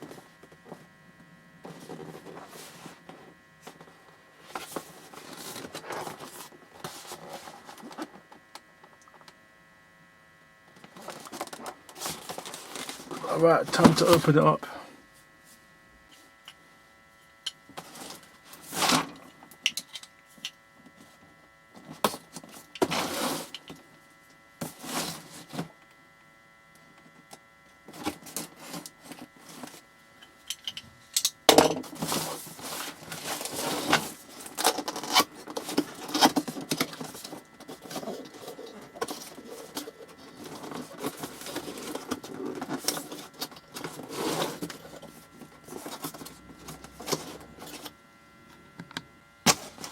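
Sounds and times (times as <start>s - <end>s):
cardboard box packaging rustling: 1.6s - 8.2s, 10.9s - 14.6s, 31.8s - 48.0s, 49.5s - 49.9s.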